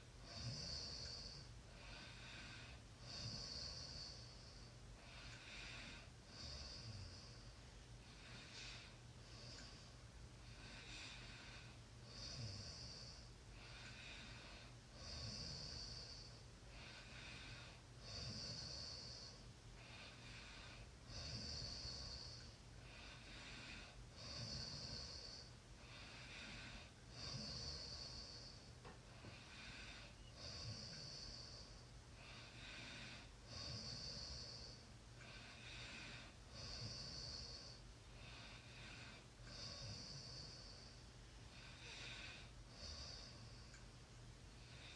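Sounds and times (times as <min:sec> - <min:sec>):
faint snoring with hiss: 0:00.0 - 0:43.8, 0:44.6 - 0:44.9.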